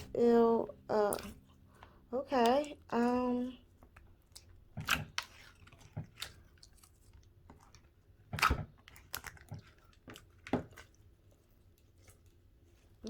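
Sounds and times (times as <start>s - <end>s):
slime squishing and clicking: 3.8s - 11.0s.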